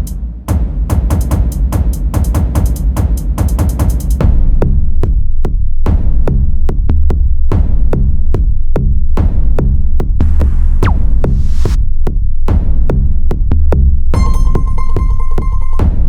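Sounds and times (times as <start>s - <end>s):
drum machine beat: 0.0s - 6.8s, 14.2s - 16.0s
heavy bass: 0.0s - 16.0s.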